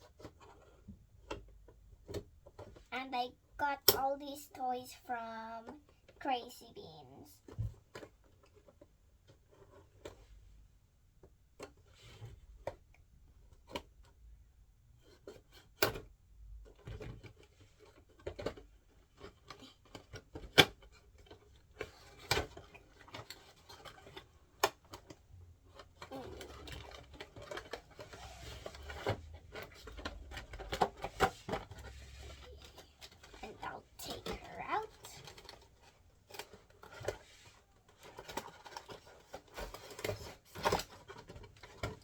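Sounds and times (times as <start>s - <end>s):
wrapping crinkling: 19.2s - 42.0s.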